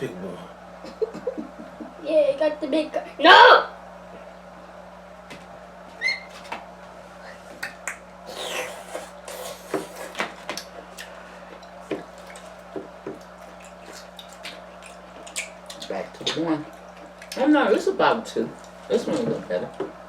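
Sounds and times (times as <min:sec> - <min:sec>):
short squeak: 0:06.0 - 0:06.4
wet chewing and smacking: 0:07.6 - 0:17.9.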